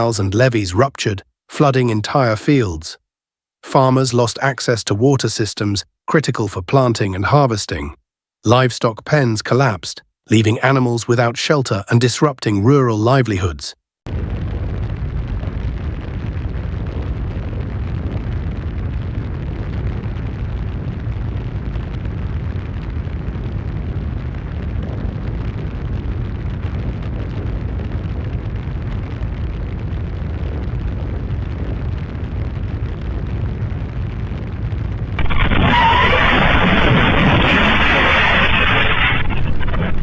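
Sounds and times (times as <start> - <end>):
low rumbling noise: 14.1 - 40.0
bright loud noise: 35.2 - 40.0.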